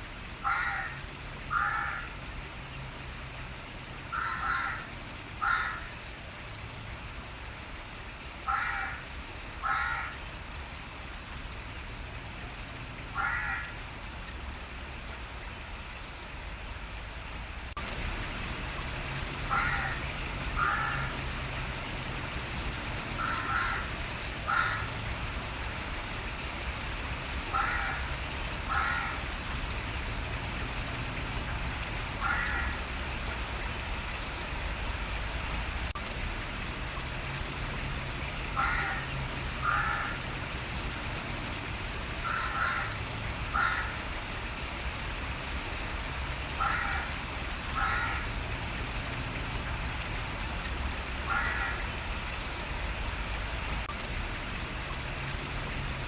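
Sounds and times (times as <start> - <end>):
running water rushing: 0.0 - 56.0
crow cawing: 0.4 - 2.1, 4.1 - 5.9, 8.5 - 9.0, 9.6 - 10.2, 13.2 - 13.8, 19.5 - 20.0, 20.6 - 21.1, 23.2 - 24.9, 27.5 - 28.1, 28.7 - 29.2, 32.2 - 32.8, 38.6 - 40.2, 42.2 - 44.0, 46.6 - 47.2, 47.8 - 48.3, 51.3 - 51.8.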